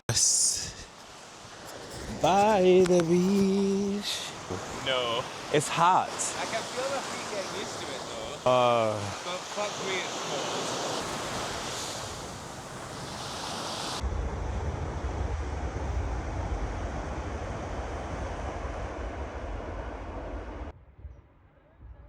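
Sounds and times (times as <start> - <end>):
ocean surf washing on beach: 0.1 - 20.7
wind buffeting microphone: 0.7 - 21.2.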